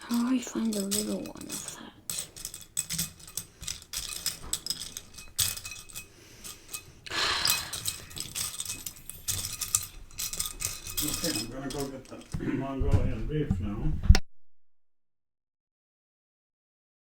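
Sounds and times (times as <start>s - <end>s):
plastic bricks clicking and clattering: 0.0s - 12.4s.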